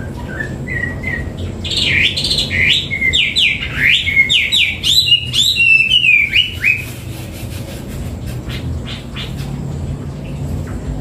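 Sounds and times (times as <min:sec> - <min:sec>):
bird singing whistled notes: 0:00.0 - 0:06.9.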